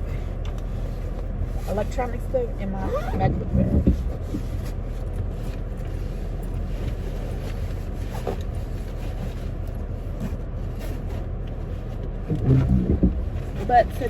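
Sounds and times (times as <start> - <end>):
car cabin road and engine rumble: 0.0 - 14.0.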